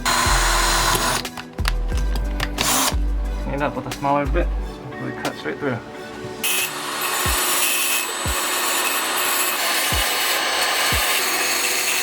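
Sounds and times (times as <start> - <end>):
rotary tool grinding metal: 0.0 - 1.3, 6.4 - 12.0.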